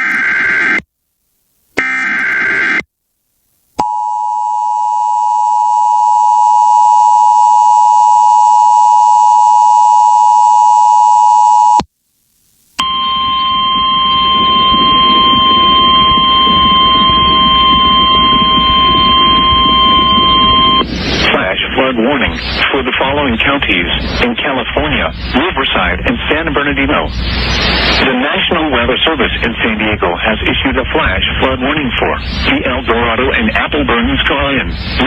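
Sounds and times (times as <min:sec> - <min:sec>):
static hiss: 0:00.0 - 0:01.8, 0:02.8 - 0:03.8, 0:11.6 - 0:35.0
two-tone attention signal: 0:12.8 - 0:20.9
steady warning alarm tone: 0:12.8 - 0:29.2
data burst: 0:12.8 - 0:35.0.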